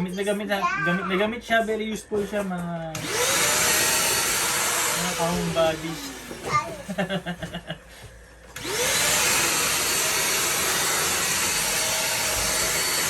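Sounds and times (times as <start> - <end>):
vacuum cleaner motor whining: 2.9 - 7.2, 8.0 - 13.0.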